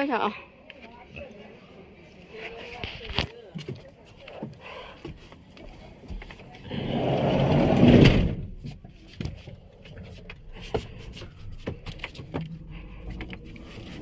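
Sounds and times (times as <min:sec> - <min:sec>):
bus engine and road noise: 0:06.8 - 0:14.0.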